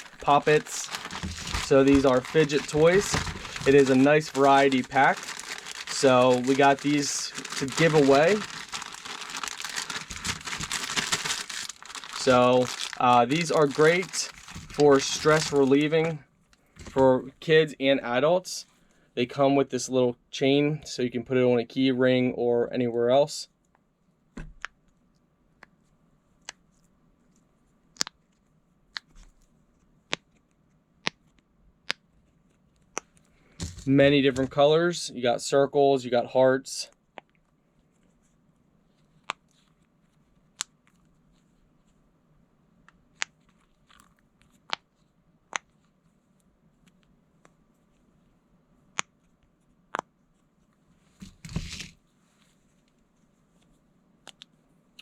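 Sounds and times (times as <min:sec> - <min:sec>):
packaging rustling: 0:00.0 - 0:17.1, 0:33.4 - 0:34.6, 0:51.2 - 0:52.0.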